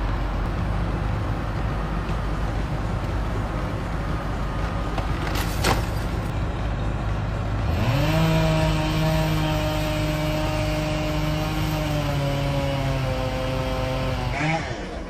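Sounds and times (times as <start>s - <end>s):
engine revving: 0.0s - 15.0s.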